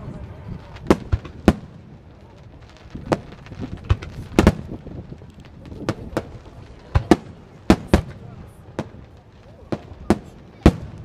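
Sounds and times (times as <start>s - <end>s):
fireworks booming: 0.0s - 11.0s.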